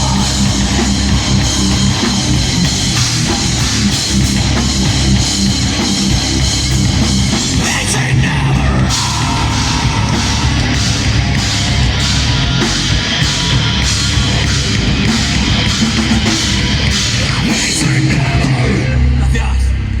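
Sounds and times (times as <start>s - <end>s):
drum kit with cymbals and snare: 0.0s - 18.9s
distorted electric guitars: 0.0s - 20.0s
live heavy metal band playing: 0.0s - 20.0s.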